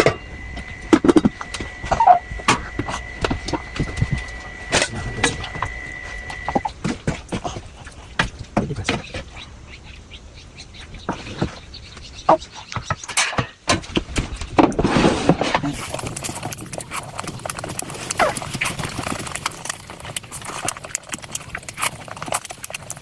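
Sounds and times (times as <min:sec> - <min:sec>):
chewing and lip smacking: 0:00.3 - 0:09.5, 0:15.7 - 0:23.0.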